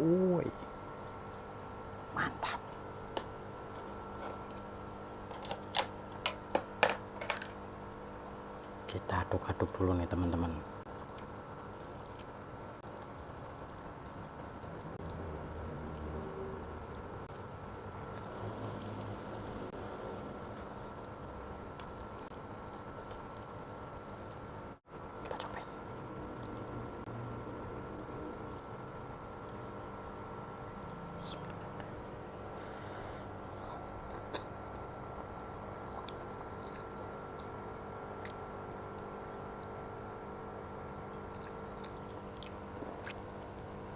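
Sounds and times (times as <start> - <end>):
faint background whine: 0.0 - 43.9
steady low hum: 0.0 - 43.9
person chewing noodles: 10.9 - 19.8, 20.4 - 24.8, 33.2 - 39.9, 40.8 - 43.8.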